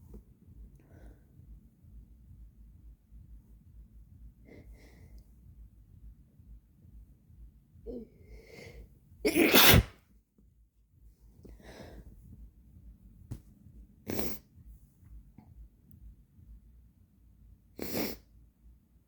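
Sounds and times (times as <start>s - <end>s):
person breathing: 0.7s - 1.5s, 7.9s - 8.9s, 11.4s - 12.4s
person sneezing: 9.3s - 10.0s, 17.8s - 18.2s.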